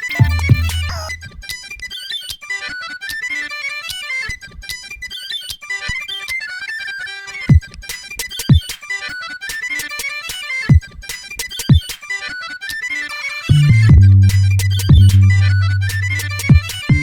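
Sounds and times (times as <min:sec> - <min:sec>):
fast melody: 0:00.0 - 0:01.4, 0:13.5 - 0:17.0
deep low thumps: 0:00.2 - 0:01.4, 0:13.5 - 0:17.0.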